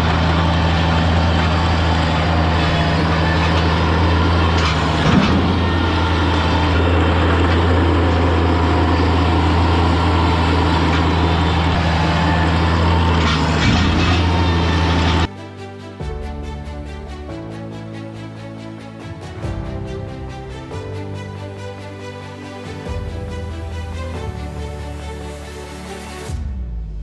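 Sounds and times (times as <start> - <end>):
skid steer engine running: 0.0 - 15.3.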